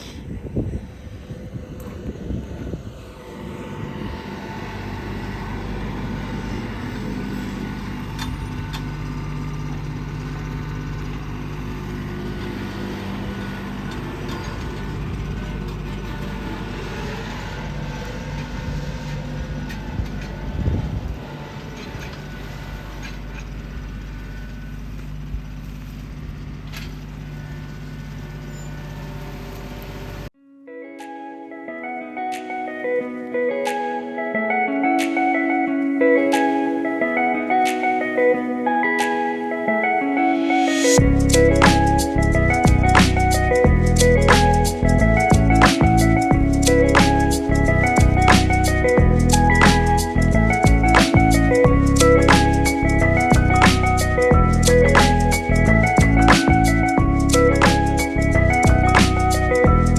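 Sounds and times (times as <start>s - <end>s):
engine running steadily: 0.0s - 30.3s, 40.7s - 59.9s
guitar music: 30.4s - 59.9s.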